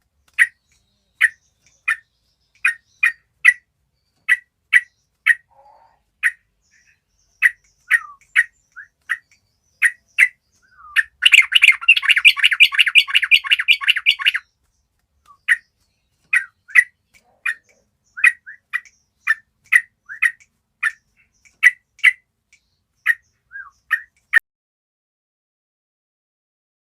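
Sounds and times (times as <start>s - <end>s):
rapid bird chattering: 0.2s - 24.4s
bulbuls calling: 4.2s - 14.5s, 15.2s - 22.2s.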